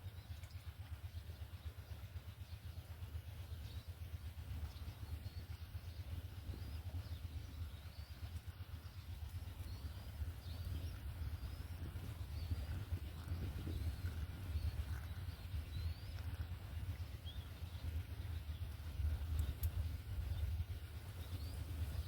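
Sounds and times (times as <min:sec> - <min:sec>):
faint bird chirps: 0:00.0 - 0:22.0
steady low rumble: 0:00.0 - 0:22.0.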